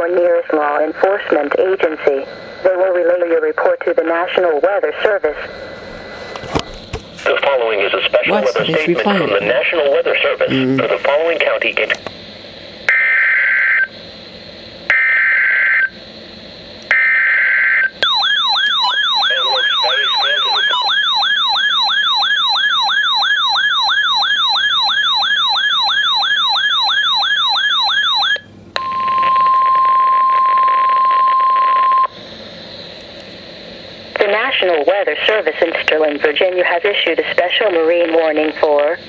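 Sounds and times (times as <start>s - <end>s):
steady alarm tone: 12.2s - 34.6s
warbling siren: 14.9s - 15.9s, 17.0s - 28.4s.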